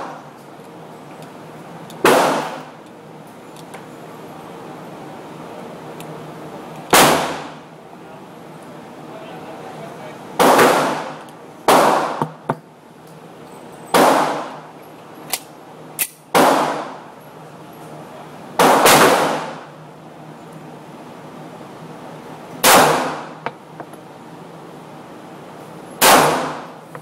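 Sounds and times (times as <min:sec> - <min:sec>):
pistol shots with ringing tail: 0:02.0 - 0:02.7, 0:13.9 - 0:14.5, 0:18.6 - 0:19.6, 0:22.6 - 0:23.4, 0:26.0 - 0:26.8.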